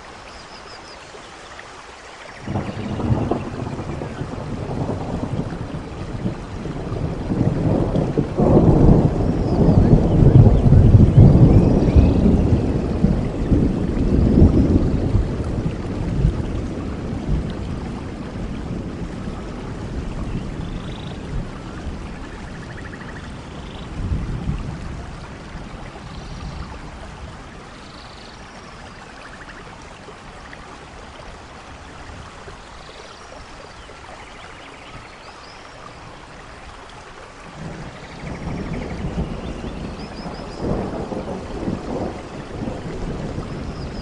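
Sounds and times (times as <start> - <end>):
steady rain: 0.0 - 44.0
rolling thunder: 2.4 - 27.9, 37.5 - 44.0.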